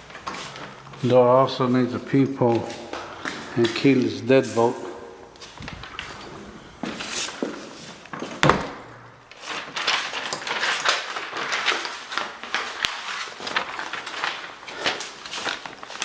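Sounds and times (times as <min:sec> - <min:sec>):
footsteps on hard floor: 0:02.5 - 0:03.8, 0:04.8 - 0:08.5.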